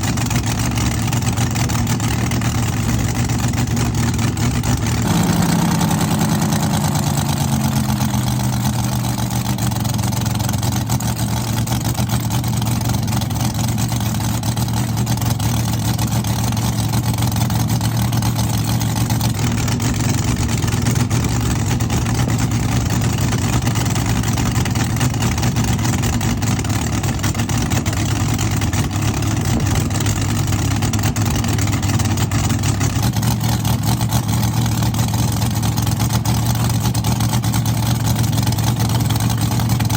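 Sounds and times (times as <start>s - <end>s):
car engine revving and idling: 0.0s - 39.9s.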